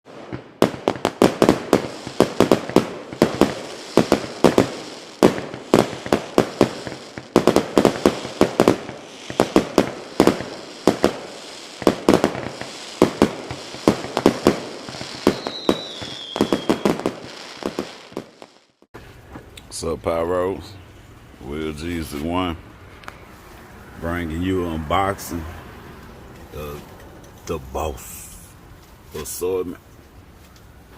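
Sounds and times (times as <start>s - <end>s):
fireworks bangs and crackles: 0.0s - 18.9s
falling firework whistle: 0.1s - 18.6s.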